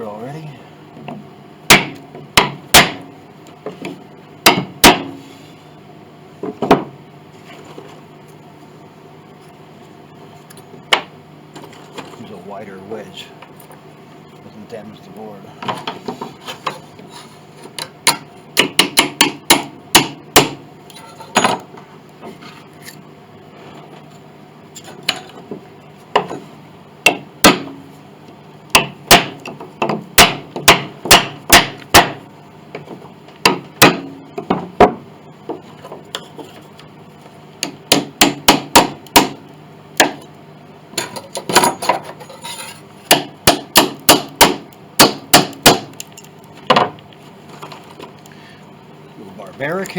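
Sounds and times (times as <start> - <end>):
hammer tapping wooden wedges: 1.7 - 3.0, 3.7 - 5.2, 17.8 - 20.6, 28.8 - 32.2, 32.8 - 36.5, 37.6 - 39.4, 43.1 - 46.0.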